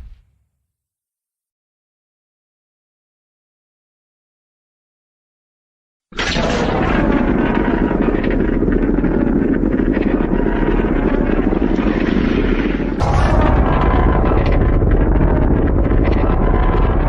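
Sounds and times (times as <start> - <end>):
harsh rattling monster sound: 6.2 - 17.0.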